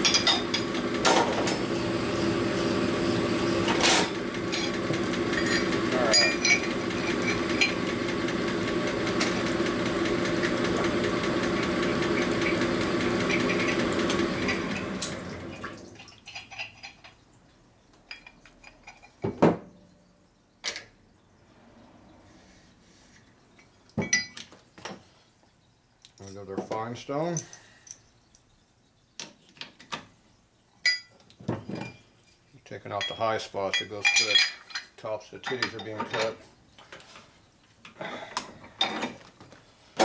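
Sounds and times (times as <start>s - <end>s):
honing machine humming and grinding: 0.0s - 15.8s.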